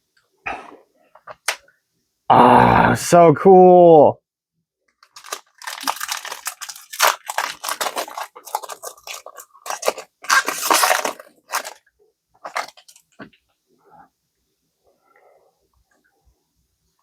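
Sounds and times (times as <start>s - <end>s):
foil pack crinkling: 5.0s - 13.3s.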